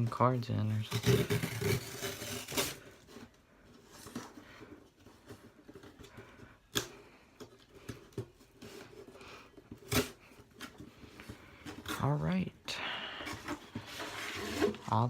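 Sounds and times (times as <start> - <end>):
cardboard box being opened: 13.2 - 15.0.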